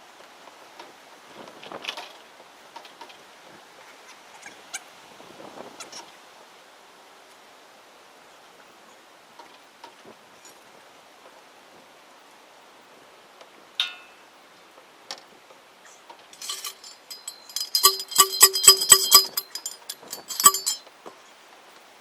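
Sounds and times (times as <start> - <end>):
metal clank: 16.4 - 20.8
ringing metallic strikes: 16.4 - 20.8.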